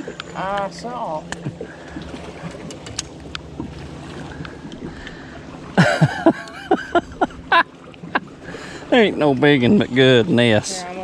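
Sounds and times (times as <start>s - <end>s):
boat engine: 0.0s - 11.0s
wind: 0.0s - 11.0s.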